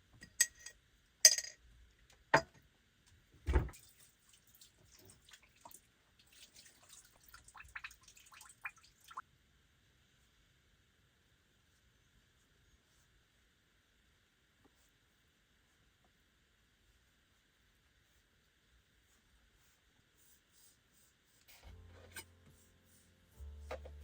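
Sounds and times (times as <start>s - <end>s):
water dripping and trickling: 3.7s - 9.2s.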